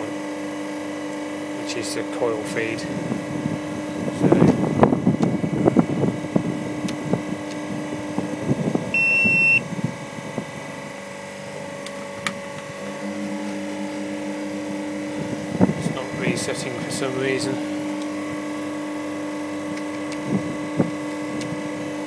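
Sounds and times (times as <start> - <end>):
machinery hum: 0.0 - 22.0
short high-pitched beep: 9.0 - 9.6.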